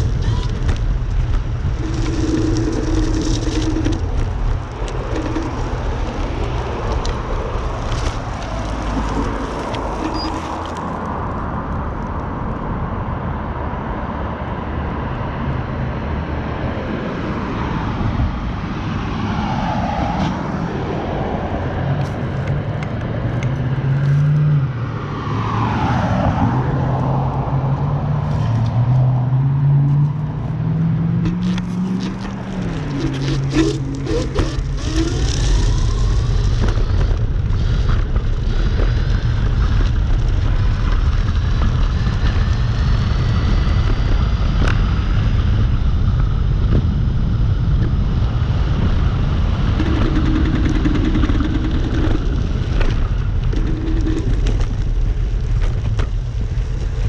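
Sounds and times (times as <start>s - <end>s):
low motor hum: 0.0s - 11.8s, 29.6s - 57.0s
passing traffic: 0.0s - 57.0s
wind and tyres on wet road: 0.0s - 57.0s.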